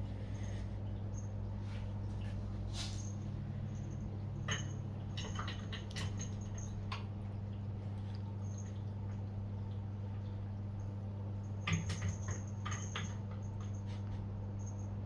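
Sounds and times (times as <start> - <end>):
steady low hum: 0.0 - 15.0
cat pawing at washing machine: 4.4 - 7.1, 11.6 - 14.2.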